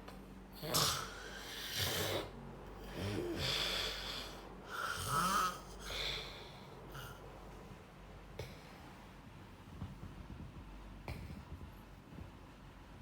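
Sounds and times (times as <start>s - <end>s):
person snoring: 0.6s - 7.2s.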